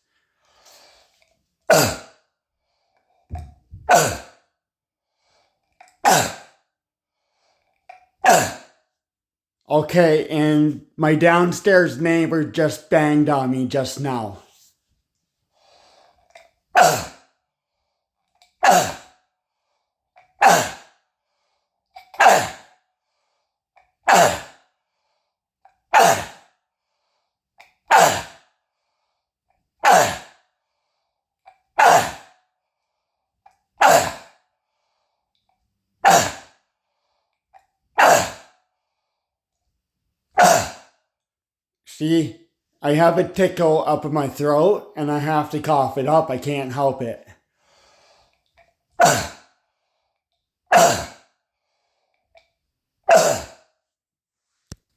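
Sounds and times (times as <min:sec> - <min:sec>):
sharp coughs: 0:01.7 - 0:02.1, 0:03.8 - 0:04.3, 0:06.0 - 0:06.6, 0:08.2 - 0:08.7, 0:16.8 - 0:17.2, 0:20.4 - 0:20.9, 0:22.2 - 0:22.7, 0:33.8 - 0:34.3, 0:36.0 - 0:36.5, 0:40.4 - 0:40.9, 0:49.0 - 0:49.4, 0:50.7 - 0:51.2, 0:53.1 - 0:53.6.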